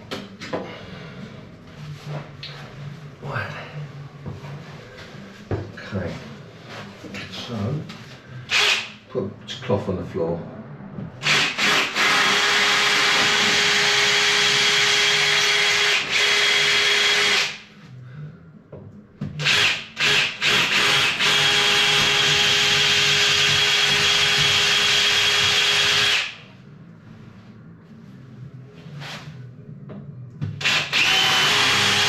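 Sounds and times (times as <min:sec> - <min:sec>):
power drill boring into wall: 0:08.5 - 0:08.9, 0:11.2 - 0:17.6, 0:19.4 - 0:26.4, 0:30.6 - 0:32.0.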